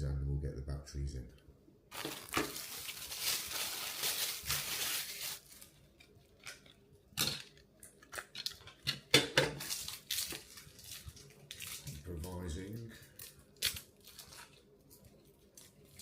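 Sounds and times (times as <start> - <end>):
packaging rustling and tearing: 1.9 - 6.7, 9.6 - 14.7.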